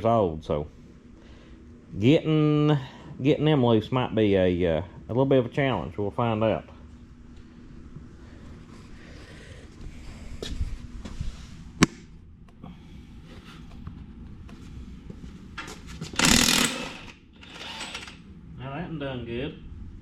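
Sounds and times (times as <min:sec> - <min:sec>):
impact wrench hammering: 0:16.2 - 0:18.2.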